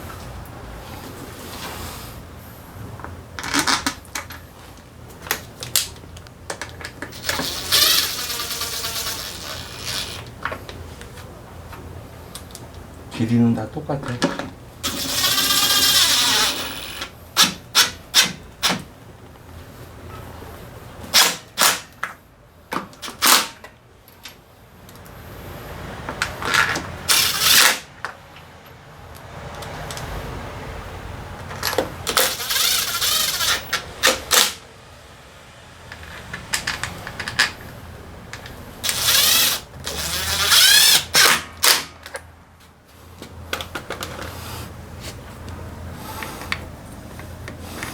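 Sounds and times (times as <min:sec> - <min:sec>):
drill-driver motor whine: 0:07.1 - 0:10.3, 0:14.8 - 0:18.4, 0:27.1 - 0:27.8, 0:32.1 - 0:34.6, 0:38.8 - 0:41.8.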